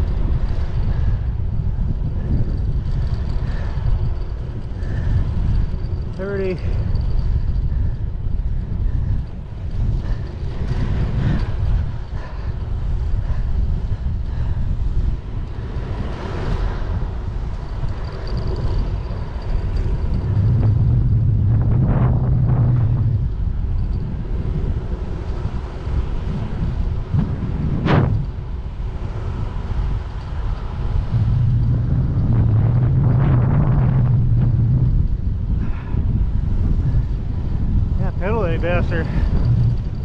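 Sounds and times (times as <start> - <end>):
bicycle riding rumble: 0.0 - 40.0
wind on microphone: 0.0 - 40.0
loud low hum: 20.0 - 23.6, 31.0 - 40.0.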